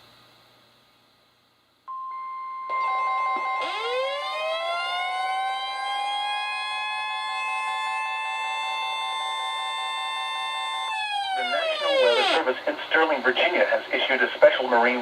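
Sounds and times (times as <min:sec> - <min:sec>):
steady high alert tone: 0:01.9 - 0:05.3, 0:11.3 - 0:12.5
pulsing alarm: 0:02.7 - 0:12.4
siren-like rising tone: 0:02.7 - 0:12.4.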